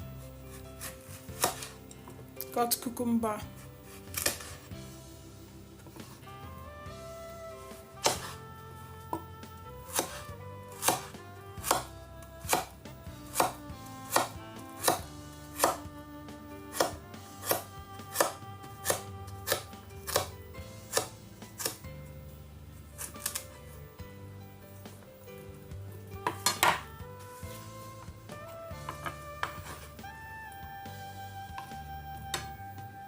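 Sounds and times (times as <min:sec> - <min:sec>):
knife chopping cucumber on board: 0:00.8 - 0:01.7, 0:03.9 - 0:04.5, 0:08.0 - 0:08.4, 0:09.9 - 0:11.9, 0:12.5 - 0:12.7, 0:13.3 - 0:15.0, 0:15.6 - 0:15.8, 0:16.7 - 0:21.8, 0:23.0 - 0:23.5, 0:26.2 - 0:26.9, 0:28.8 - 0:29.9.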